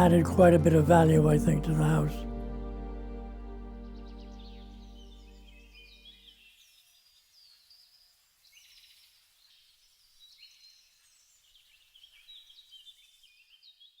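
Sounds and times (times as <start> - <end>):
soft background music: 0.0 - 6.1
faint birdsong chirps and whistles: 3.8 - 14.0.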